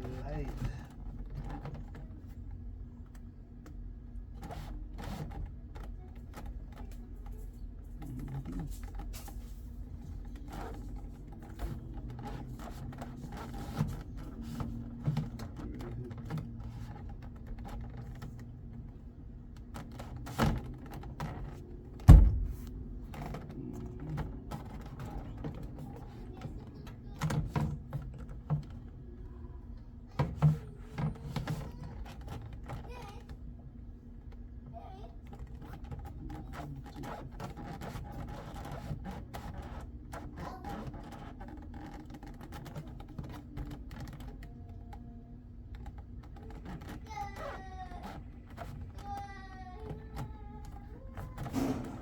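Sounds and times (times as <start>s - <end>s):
loud knock: 22.0s - 22.7s
clicks and taps on car door panel: 22.0s - 22.9s.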